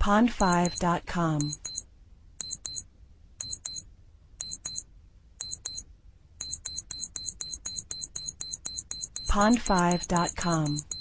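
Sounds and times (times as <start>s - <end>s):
electronic alarm beeping: 0.4s - 0.8s, 1.4s - 1.8s, 2.4s - 2.8s, 3.4s - 3.8s, 4.4s - 4.8s, 5.4s - 5.8s, 6.4s - 11.0s.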